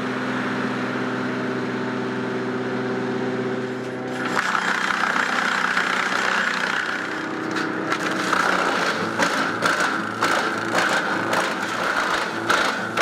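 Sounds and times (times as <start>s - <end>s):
wood chipper whining: 0.0s - 13.0s
sharp cracks and clatter: 4.1s - 13.0s.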